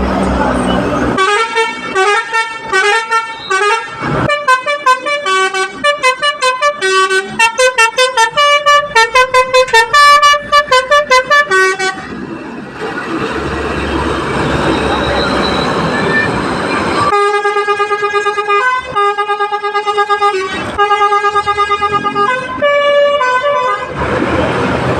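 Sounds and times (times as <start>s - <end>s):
musical bus air horn: 1.2s - 12.2s, 17.1s - 24.0s.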